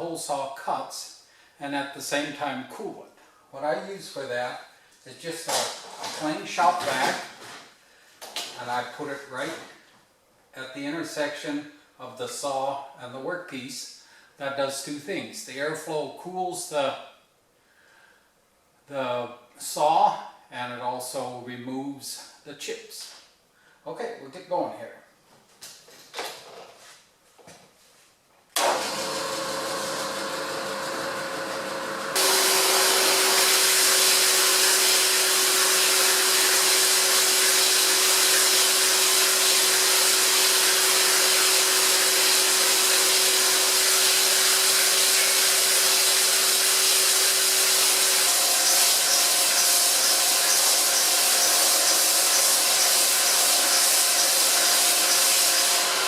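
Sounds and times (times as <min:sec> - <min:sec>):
milling machine running: 0:28.6 - 0:56.0
shop vac humming: 0:28.6 - 0:56.0
hole saw cutting steel: 0:31.5 - 0:56.0.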